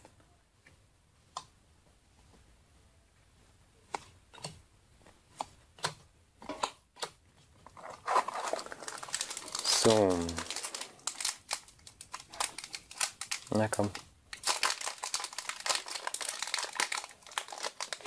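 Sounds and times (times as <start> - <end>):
foil wrapper crinkling: 7.8 - 18.0.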